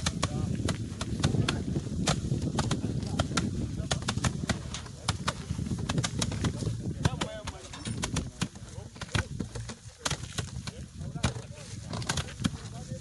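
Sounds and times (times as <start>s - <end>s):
sticks beating crop: 0.0s - 13.0s.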